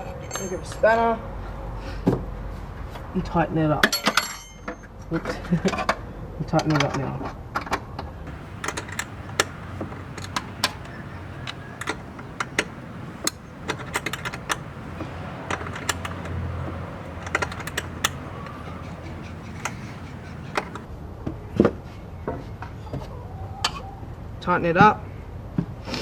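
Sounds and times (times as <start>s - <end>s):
spanner clicking on metal: 8.3s - 20.9s.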